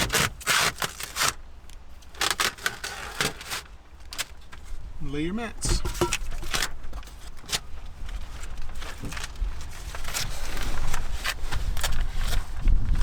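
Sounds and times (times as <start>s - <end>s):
plastic film crinkling: 0.0s - 4.8s
handling thumps: 5.6s - 7.6s.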